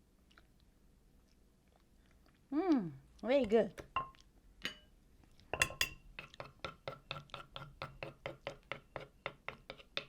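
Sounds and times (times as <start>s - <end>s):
utensil knocking on a bowl: 5.6s - 6.0s.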